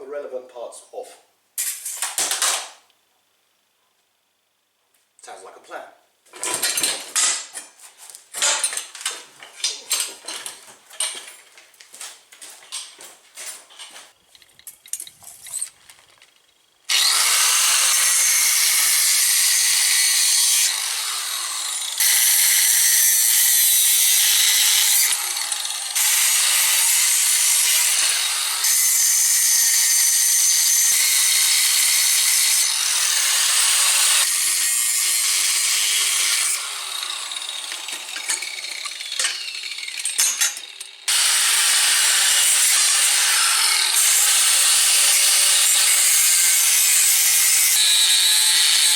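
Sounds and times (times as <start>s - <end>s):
metal parts clattering: 8.4s - 11.3s, 13.7s - 16.6s, 37.9s - 41.0s
power tool cutting steel tube: 16.9s - 48.9s.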